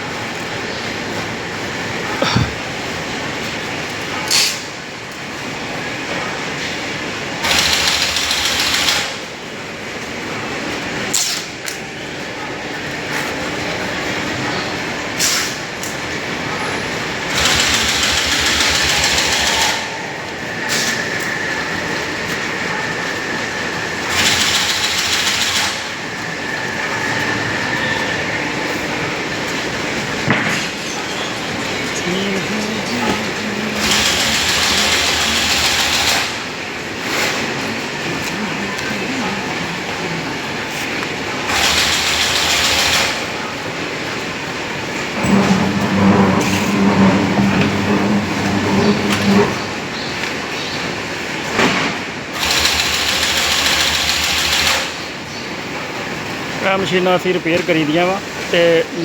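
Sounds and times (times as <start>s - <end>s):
workshop machinery running: 0.0s - 59.0s.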